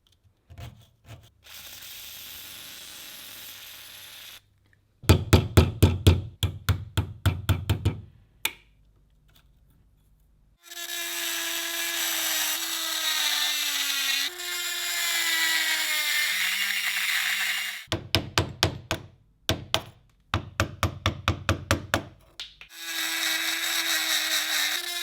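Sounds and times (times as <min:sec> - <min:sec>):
small electric power tool running: 0:01.5 - 0:04.4, 0:10.6 - 0:17.9, 0:22.7 - 0:25.0.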